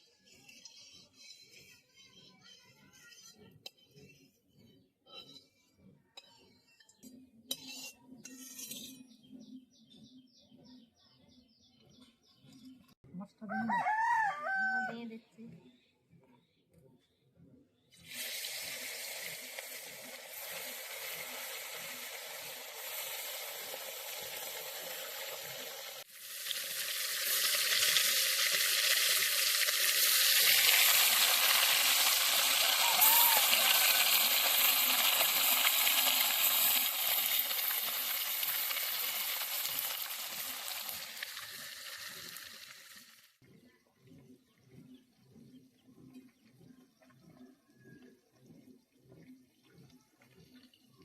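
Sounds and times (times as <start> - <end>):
fish sizzling in hot oil: 18.0 - 43.4.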